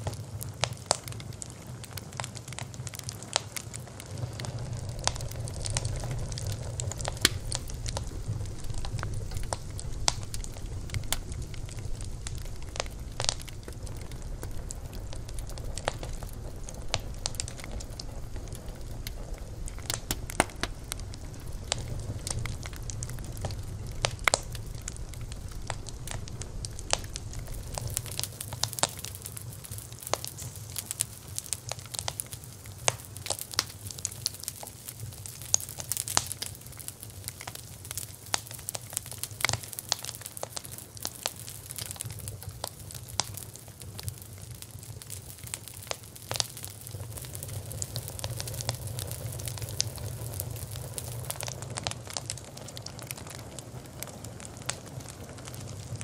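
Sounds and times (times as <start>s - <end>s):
campfire crackling: 0.0s - 56.0s
low rumble of flames: 0.0s - 56.0s.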